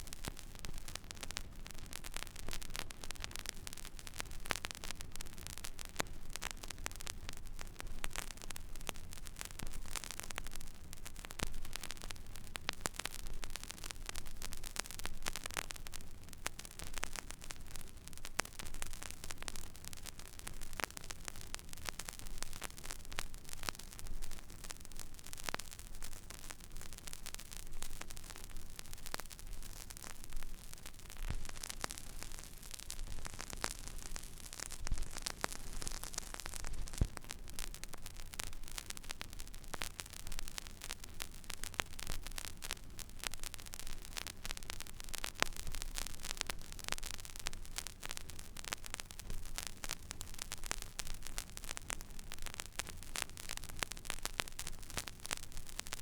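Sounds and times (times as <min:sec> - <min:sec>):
loud record pops: 0:00.0 - 0:56.0
vinyl surface hiss and crackles: 0:00.0 - 0:56.0.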